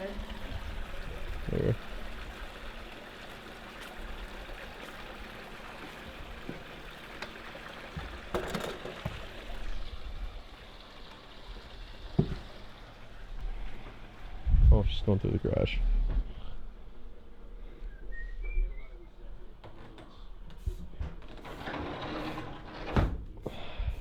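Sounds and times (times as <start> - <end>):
campfire hissing: 0.0 - 14.4.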